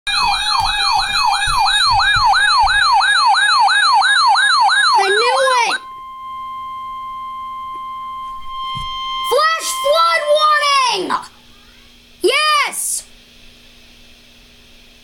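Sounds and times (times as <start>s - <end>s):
electronic siren yelping: 0.1s - 11.2s
steady alert tone: 0.1s - 11.3s.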